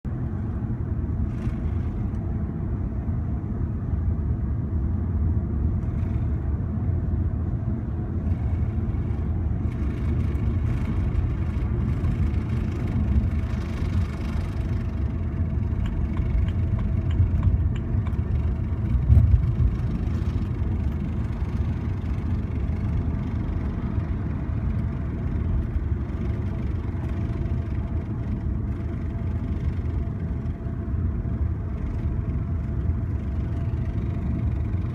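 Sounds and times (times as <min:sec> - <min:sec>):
car engine and road rumble: 0:00.0 - 0:34.9
ticking noise: 0:09.8 - 0:20.0.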